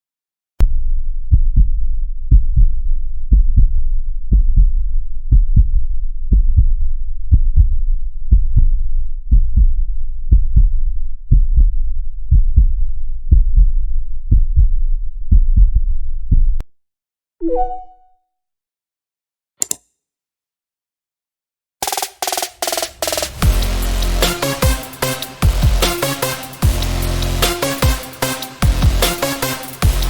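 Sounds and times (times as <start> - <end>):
heartbeat thumps: 1.3 - 16.6.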